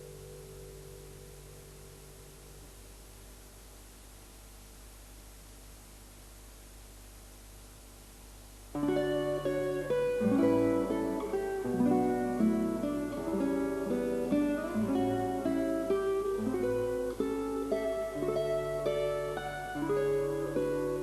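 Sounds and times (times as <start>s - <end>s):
acoustic guitar melody: 0.0s - 2.9s, 8.8s - 21.0s.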